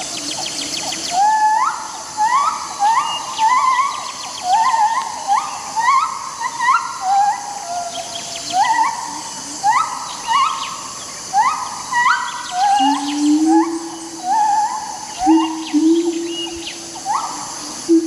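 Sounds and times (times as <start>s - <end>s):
steady high hiss: 0.0s - 18.0s
whistled animal calls: 11.3s - 18.0s.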